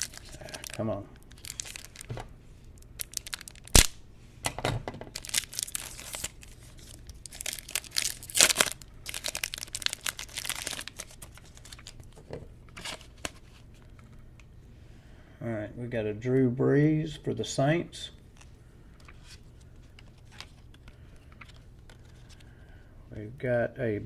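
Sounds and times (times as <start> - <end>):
plastic wrapper tearing and crinkling: 0.0 - 2.1, 2.8 - 4.0, 5.1 - 12.2.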